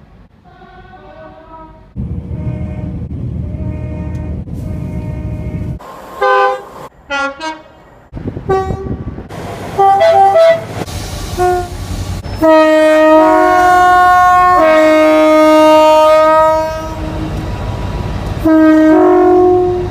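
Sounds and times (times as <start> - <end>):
low rumble of train: 0.0 - 19.9
train horn blasts: 0.5 - 7.8, 8.5 - 9.1, 9.8 - 10.7, 11.4 - 11.8, 12.4 - 17.4, 18.4 - 19.9.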